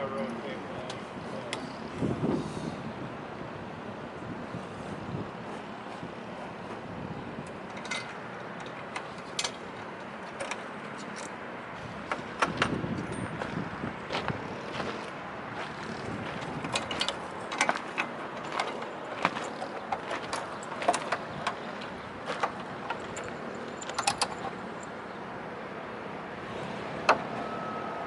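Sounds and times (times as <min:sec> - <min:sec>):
clicks and knocks of bolts and tools: 0:07.4 - 0:11.4, 0:16.4 - 0:24.9.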